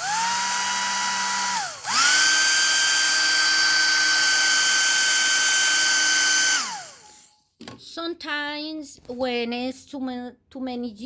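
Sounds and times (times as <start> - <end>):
hair dryer motor whine: 0.0 - 7.3.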